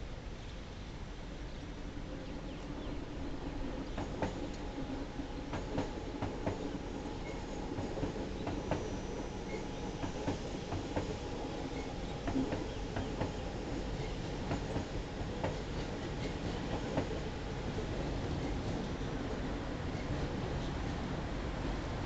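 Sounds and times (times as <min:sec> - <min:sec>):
train hum: 0:00.0 - 0:22.0
train wheels pounding track: 0:03.8 - 0:21.0.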